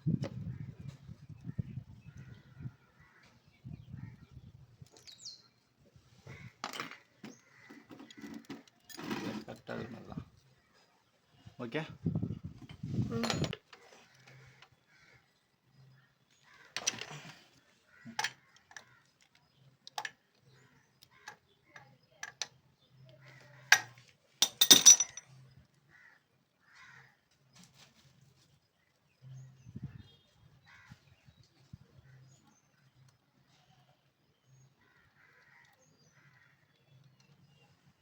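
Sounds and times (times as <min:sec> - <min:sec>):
metal tools clinking on engine: 0:23.8 - 0:25.2
ringing metal clatter: 0:24.4 - 0:25.2.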